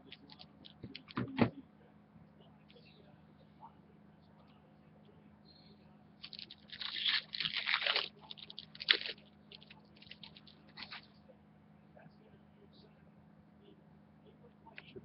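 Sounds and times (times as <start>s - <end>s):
crinkly packaging rustling: 6.2s - 11.0s.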